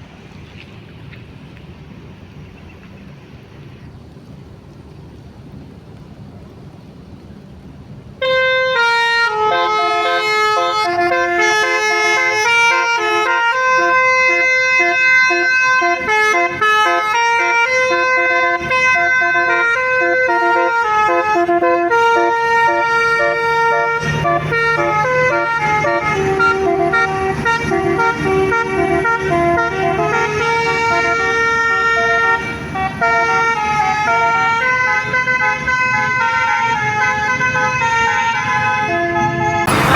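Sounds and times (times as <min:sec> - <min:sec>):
musical air horn tune: 0:08.2 - 0:39.9.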